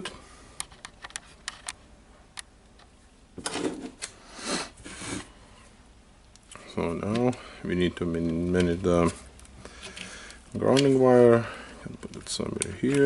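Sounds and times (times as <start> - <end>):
rustling scrapes: 3.4 - 5.8.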